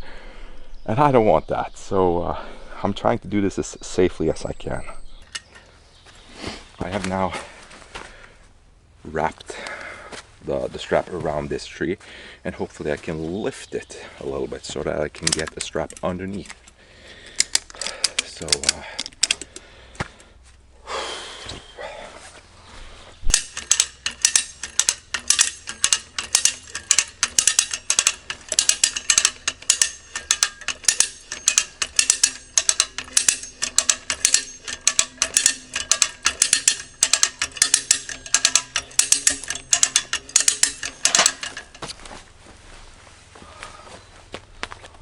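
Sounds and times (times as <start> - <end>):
ratchet strap clicking: 15.2 - 19.6, 23.3 - 42.0.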